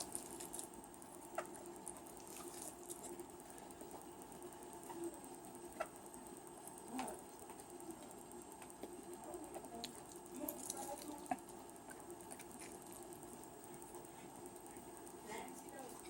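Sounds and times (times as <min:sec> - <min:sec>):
chewing mouth noises: 0:01.8 - 0:03.2.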